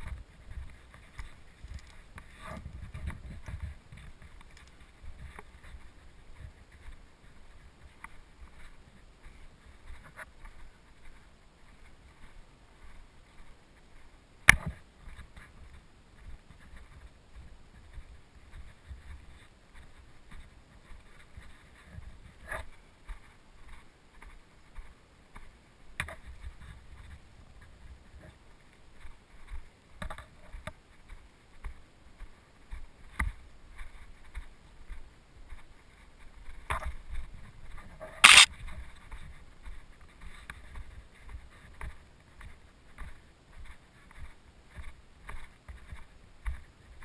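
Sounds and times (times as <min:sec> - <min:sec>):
rustling from someone moving: 0:00.0 - 0:47.0
loud sharp crack: 0:38.2 - 0:38.5.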